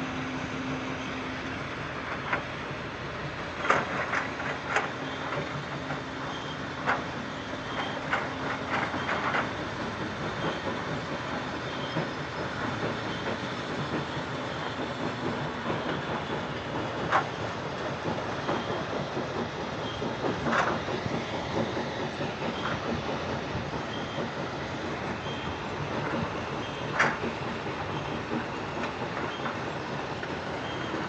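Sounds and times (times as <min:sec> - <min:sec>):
excavator diesel engine rumbling: 0:00.0 - 0:31.0.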